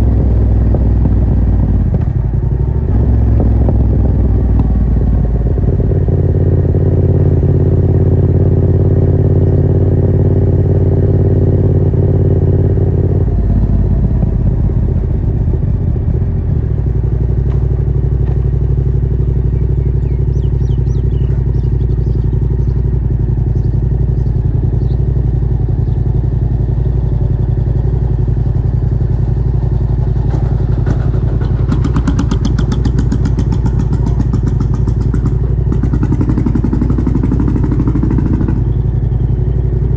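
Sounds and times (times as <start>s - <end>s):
motorcycle engine riding: 0.0s - 39.9s
fast rattle: 29.9s - 36.3s.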